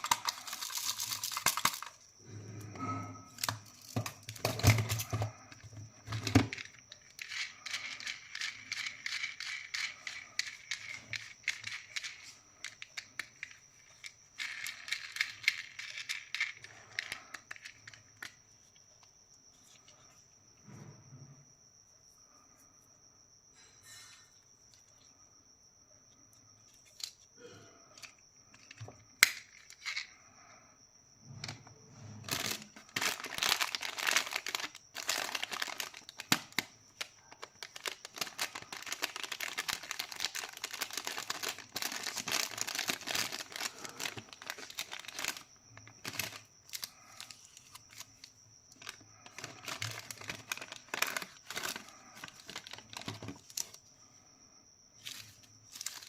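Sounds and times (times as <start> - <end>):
plastic wrappers crinkling: 0.0 - 2.0, 32.2 - 53.8, 55.1 - 56.0.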